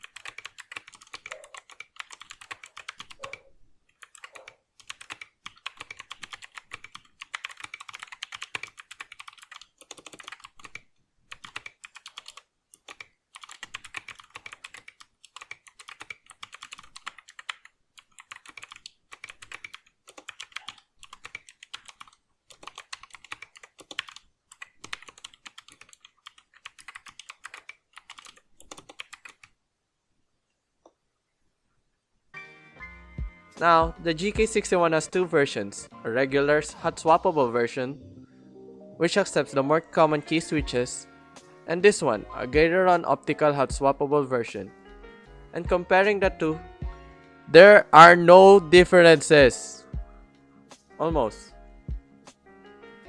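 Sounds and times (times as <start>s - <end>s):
clicky keyboard typing: 0.0s - 29.6s.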